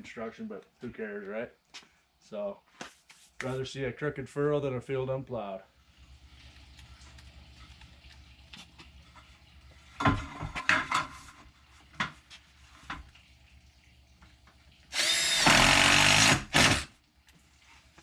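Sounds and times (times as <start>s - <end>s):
cordless drill whirring: 14.9s - 16.9s.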